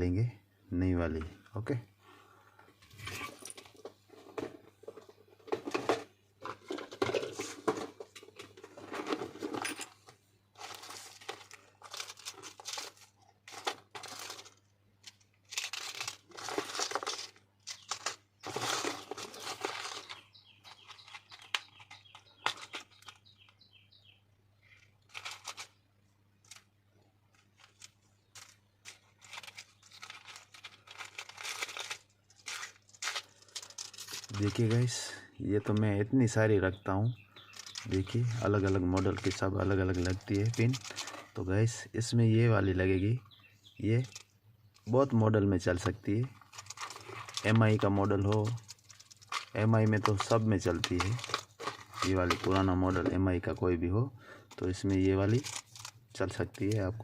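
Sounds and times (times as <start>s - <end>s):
plastic packets crinkling: 10.6s - 23.2s, 24.8s - 25.8s, 26.4s - 35.2s, 37.3s - 41.4s, 43.9s - 44.9s, 45.7s - 53.6s, 54.3s - 56.9s.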